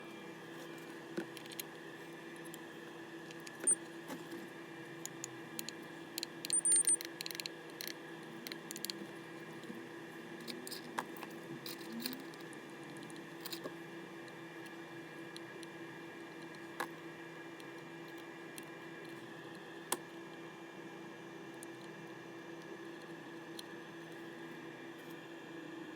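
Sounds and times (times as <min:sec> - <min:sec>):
steady electrical hum: 0:00.0 - 0:25.9
small metal tools clicking: 0:06.2 - 0:07.9.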